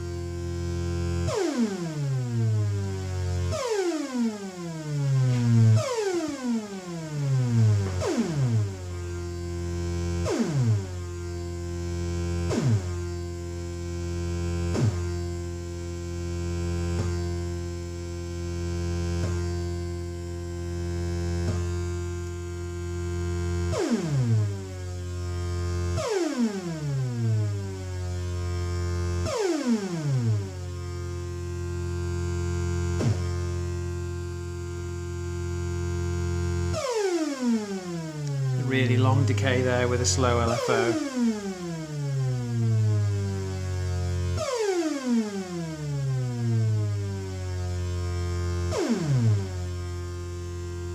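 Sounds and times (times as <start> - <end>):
synthesizer low drone: 0.0 - 18.3, 38.0 - 44.4
synthesizer falling sweep: 38.4 - 42.0.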